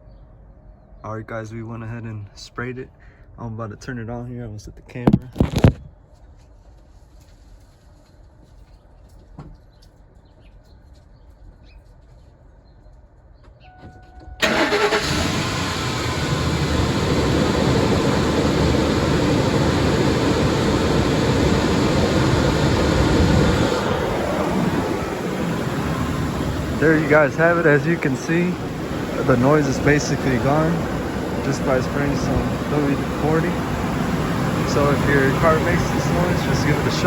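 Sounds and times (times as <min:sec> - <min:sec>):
car engine starting and running: 0:14.4 - 0:37.0.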